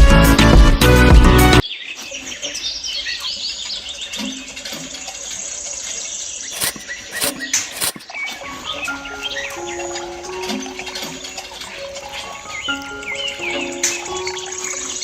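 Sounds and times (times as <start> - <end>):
sharp clicks: 6.6 - 8.0.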